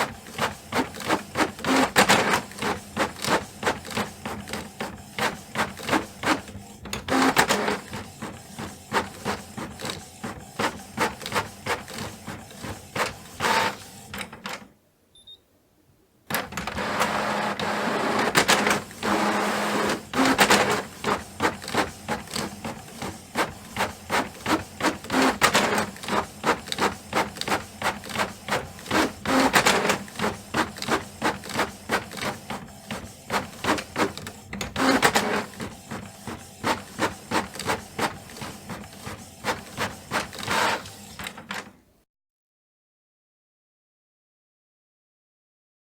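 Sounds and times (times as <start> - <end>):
printer whirring: 0.0 - 14.6, 16.3 - 41.7
printer mechanical strokes: 16.3 - 41.2.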